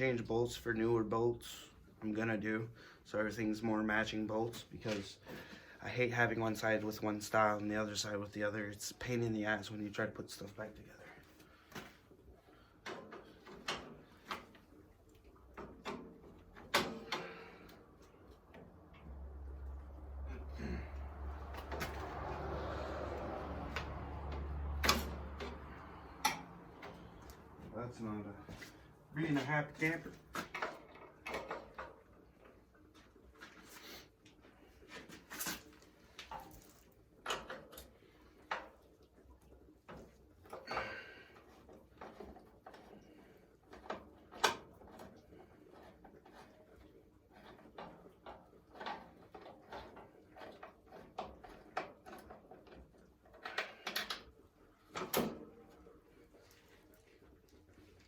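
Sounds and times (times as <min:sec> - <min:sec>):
tools knocking and clunking: 0:15.5 - 0:17.5, 0:23.2 - 0:27.7.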